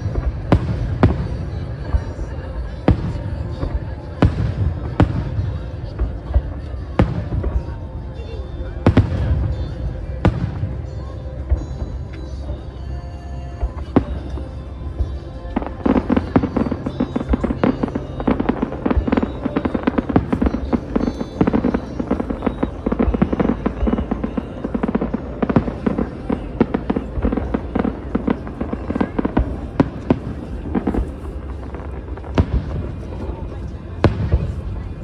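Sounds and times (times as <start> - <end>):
fireworks crackling and banging: 0.0 - 13.0, 13.6 - 35.0.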